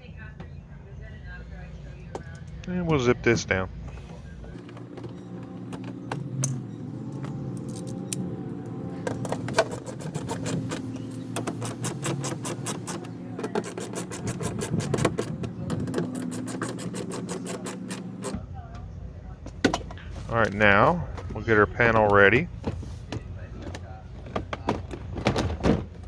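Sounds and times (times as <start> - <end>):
power driver running: 0.0 - 26.0
rapid clicking: 8.9 - 18.4.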